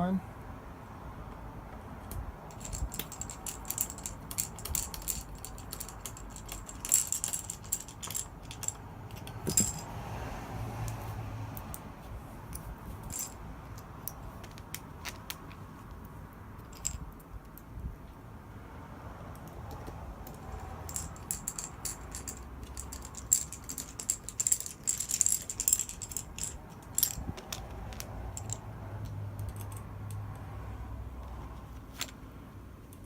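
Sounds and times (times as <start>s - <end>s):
screws and screwdriver clinking: 2.5s - 9.9s, 12.5s - 15.6s, 16.6s - 17.1s, 19.7s - 30.3s.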